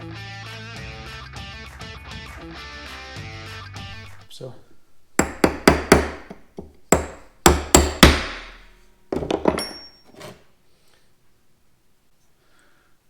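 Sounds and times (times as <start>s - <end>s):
hammer striking metal: 5.2s - 10.3s.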